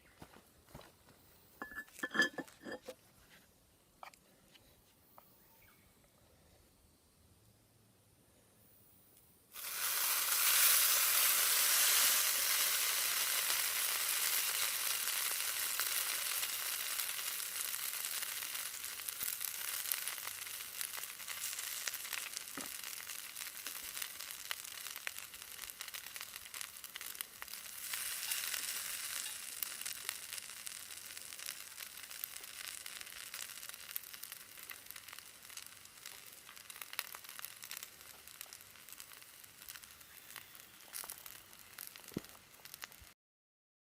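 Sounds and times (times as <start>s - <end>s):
food sizzling in a skillet: 9.5s - 43.2s.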